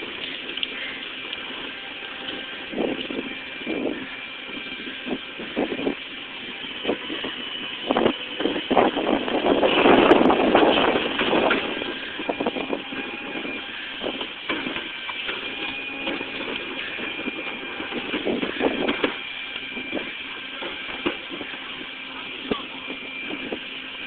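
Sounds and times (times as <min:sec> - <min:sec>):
rushing clatter: 0:00.0 - 0:23.6
recycling truck machinery running: 0:00.0 - 0:24.0.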